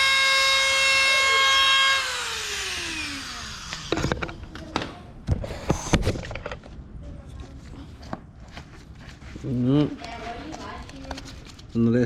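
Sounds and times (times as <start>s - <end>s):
power tool motor whining down: 0.0s - 4.3s.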